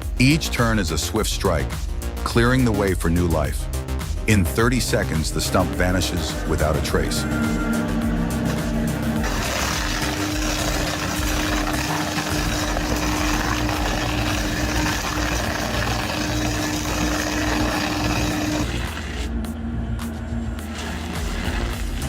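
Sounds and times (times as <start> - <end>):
stump grinder running: 4.9 - 19.4, 20.6 - 22.0.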